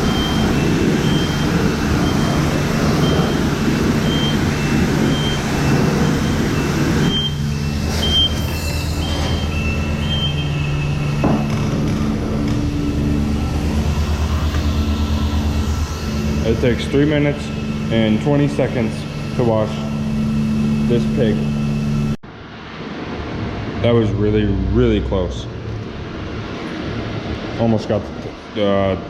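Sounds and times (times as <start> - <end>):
high-pressure water spray hissing: 0.0 - 11.5
pump motor humming: 0.0 - 22.2
short high beeps: 5.1 - 11.5.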